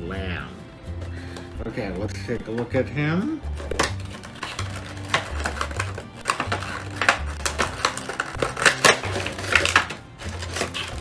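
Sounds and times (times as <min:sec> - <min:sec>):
plastic packaging crinkling and snapping: 0:03.6 - 0:11.0.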